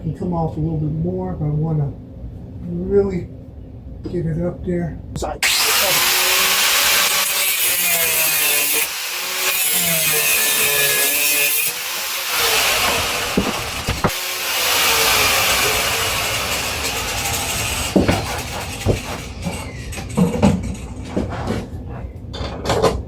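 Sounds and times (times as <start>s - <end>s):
power tool cutting metal bolt: 5.4s - 20.4s.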